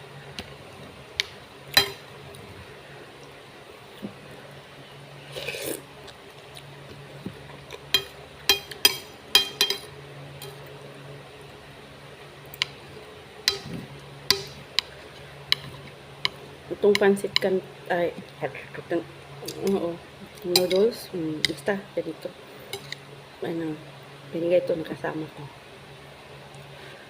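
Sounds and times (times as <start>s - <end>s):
steady low hum: 0.0s - 27.0s
utensils clinking against a bowl: 1.7s - 2.1s, 7.7s - 10.7s, 14.3s - 17.6s, 20.4s - 21.7s, 22.7s - 23.0s.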